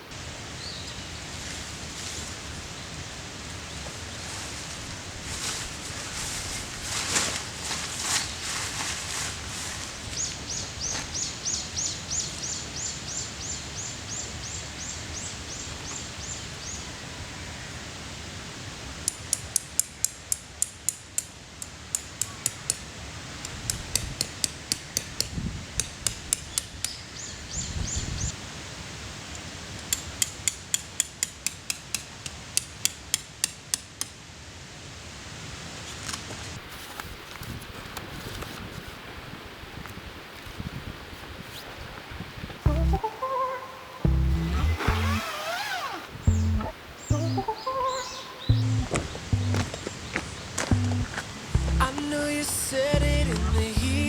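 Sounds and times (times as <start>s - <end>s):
bird chirping: 42.7s - 52.1s.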